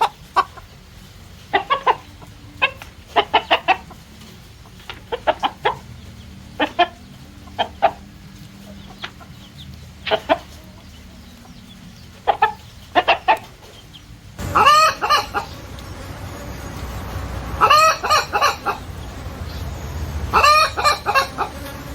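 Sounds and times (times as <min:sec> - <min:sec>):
chickens clucking: 0:00.0 - 0:21.9
low background hum: 0:13.8 - 0:21.9.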